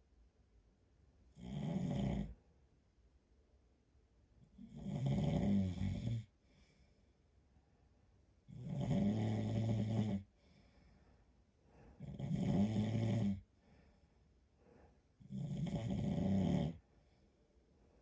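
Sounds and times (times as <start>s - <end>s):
man snoring: 1.4s - 2.4s, 4.7s - 6.3s, 8.5s - 10.3s, 12.0s - 13.4s, 15.2s - 16.8s
quiet breaths: 4.3s - 18.0s.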